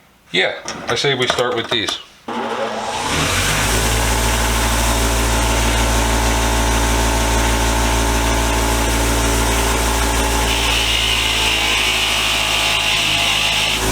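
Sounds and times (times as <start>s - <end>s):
bench power tool motor humming: 2.3s - 13.9s.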